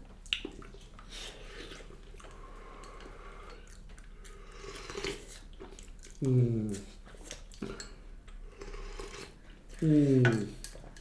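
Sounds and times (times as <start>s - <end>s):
person chewing food: 0.1s - 9.8s.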